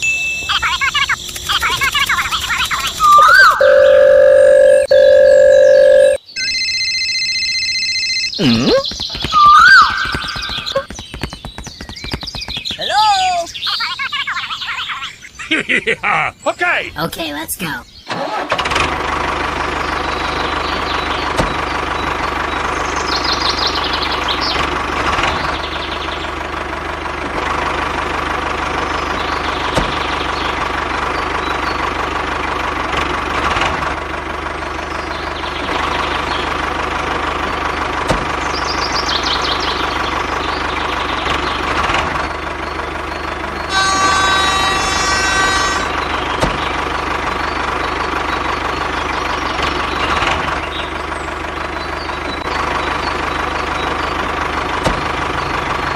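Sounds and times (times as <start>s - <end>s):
pitched tone: 3.1s - 10.8s, 43.7s - 45.9s.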